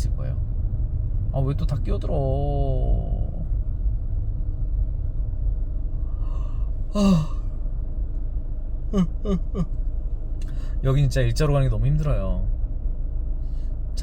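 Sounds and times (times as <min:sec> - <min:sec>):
car cabin rumble: 0:00.0 - 0:14.0
man sighing: 0:06.1 - 0:07.5, 0:08.9 - 0:09.7
brief vocal sound: 0:06.2 - 0:07.4, 0:08.9 - 0:09.7.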